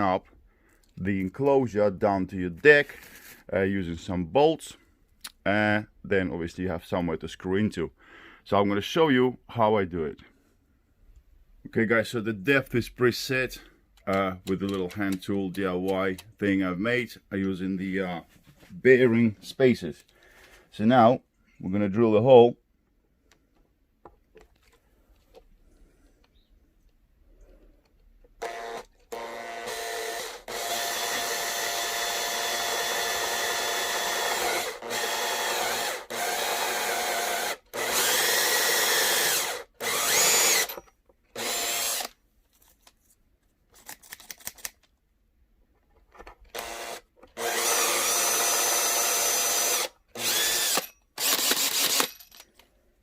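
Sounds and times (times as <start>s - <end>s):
power drill boring into wood: 28.4s - 42.2s, 46.5s - 52.4s.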